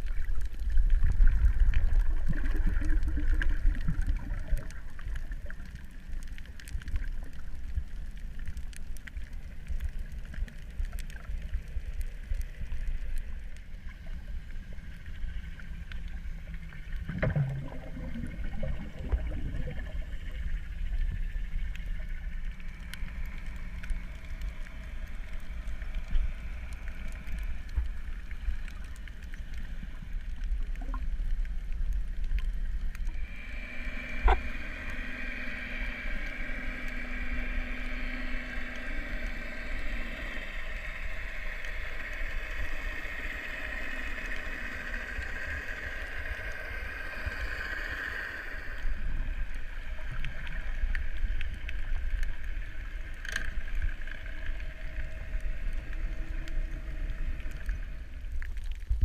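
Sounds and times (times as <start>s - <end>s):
faint underwater clicks: 0.0s - 59.0s
underwater low rumble: 0.0s - 59.0s.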